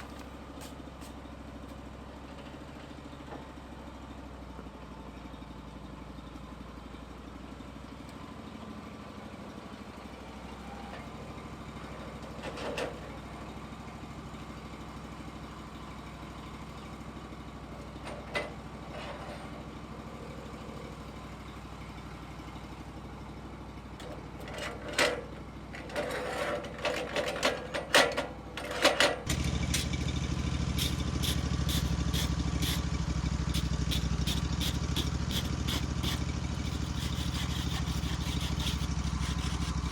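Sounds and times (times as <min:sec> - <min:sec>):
sawmill engine running: 0:08.7 - 0:39.9.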